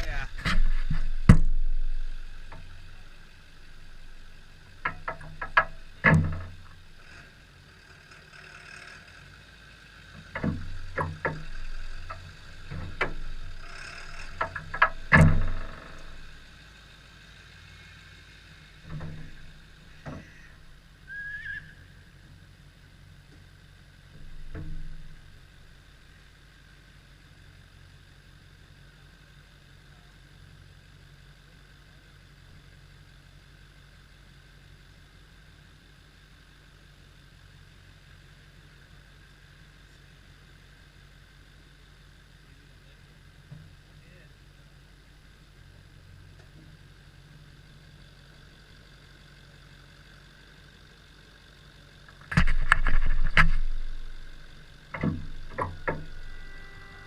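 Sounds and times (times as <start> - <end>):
engine knocks and bangs: 0.0 - 9.4, 10.0 - 16.5, 18.6 - 21.0, 23.3 - 26.0, 52.0 - 57.0
car engine running: 0.0 - 57.0.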